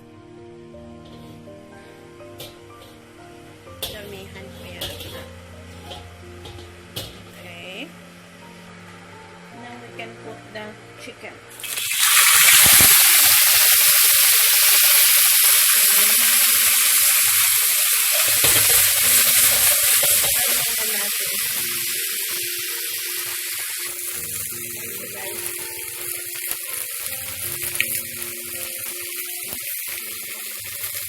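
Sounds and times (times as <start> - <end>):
chicken sizzling in hot oil: 11.5 - 31.0.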